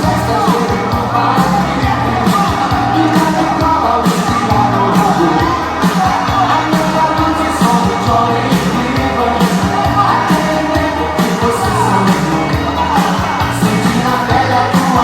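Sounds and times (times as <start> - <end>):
person singing: 0.0 - 15.0
upbeat pop dance music: 0.0 - 15.0.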